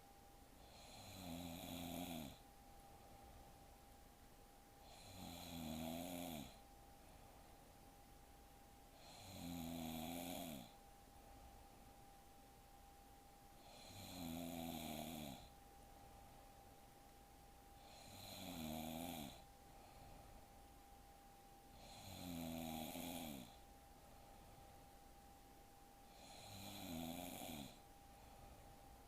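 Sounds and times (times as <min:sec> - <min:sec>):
woman snoring: 0:00.6 - 0:02.4, 0:04.8 - 0:06.6, 0:09.0 - 0:10.8, 0:13.6 - 0:15.6, 0:17.8 - 0:19.5, 0:21.7 - 0:23.6, 0:26.1 - 0:27.8.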